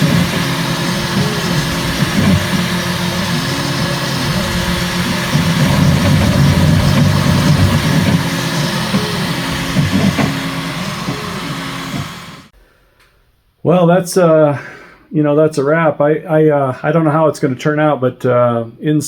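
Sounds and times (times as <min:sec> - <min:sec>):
stepper motors humming: 0:00.0 - 0:12.5.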